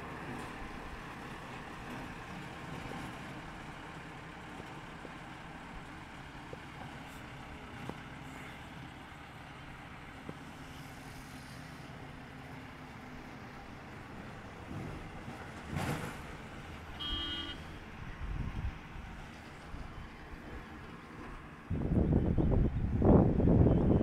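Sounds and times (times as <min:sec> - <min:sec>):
steady engine noise: 0:00.0 - 0:24.0.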